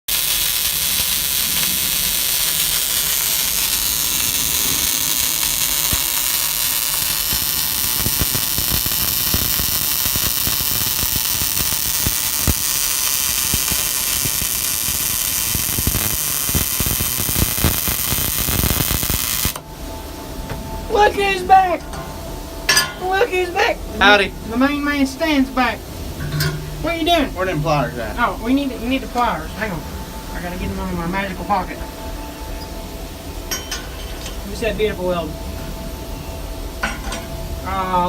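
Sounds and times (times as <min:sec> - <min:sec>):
welding arc crackling hiss: 0:00.0 - 0:20.3.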